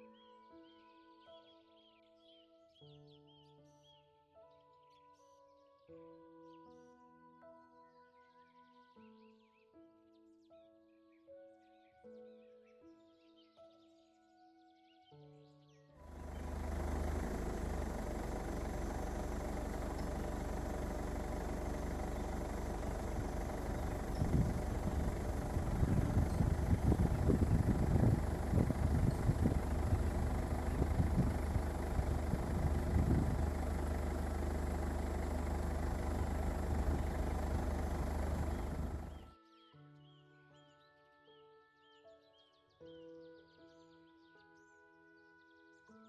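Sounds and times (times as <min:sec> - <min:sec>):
engine humming: 0:16.0 - 0:39.3
uneven low rumbles: 0:16.1 - 0:39.2.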